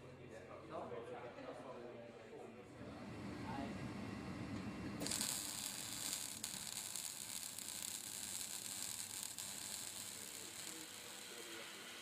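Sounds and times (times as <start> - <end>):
welding arc sizzling and crackling: 5.0 - 12.0.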